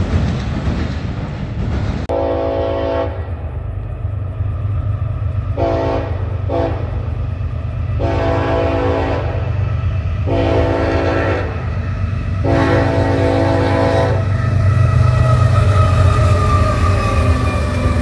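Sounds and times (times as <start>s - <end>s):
low rumble of train: 0.0s - 18.0s
locomotive horn blasts: 2.1s - 3.3s, 5.6s - 7.1s, 8.0s - 9.5s, 10.2s - 11.7s, 12.4s - 14.3s.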